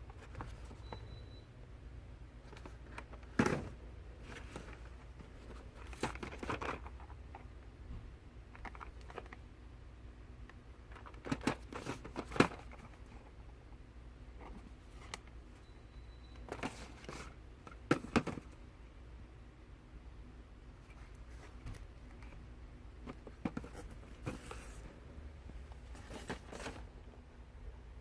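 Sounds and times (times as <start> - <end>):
packaging clicks and crinkles: 4.3 - 7.1.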